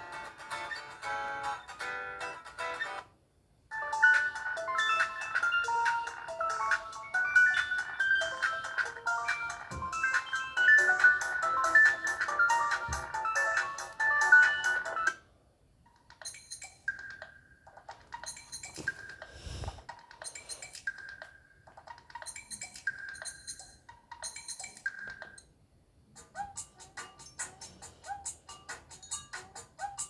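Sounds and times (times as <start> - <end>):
phone ringtone: 3.7 - 15.2.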